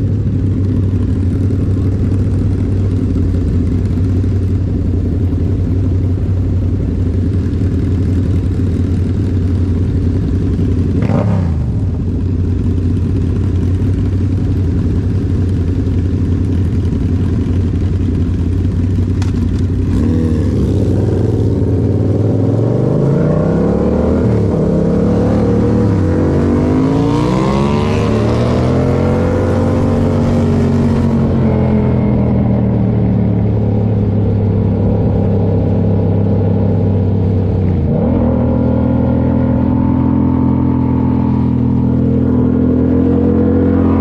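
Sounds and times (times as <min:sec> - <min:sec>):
motorcycle engine revving: 0:00.0 - 0:44.0.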